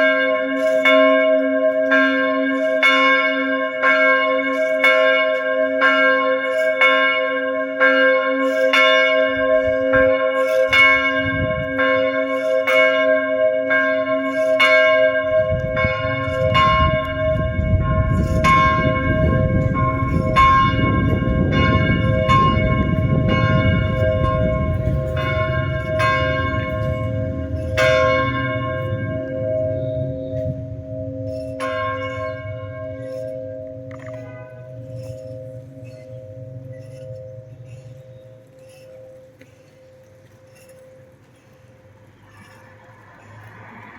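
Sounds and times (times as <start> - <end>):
church bell ringing: 0.0 - 42.2
low rumble: 15.2 - 38.6.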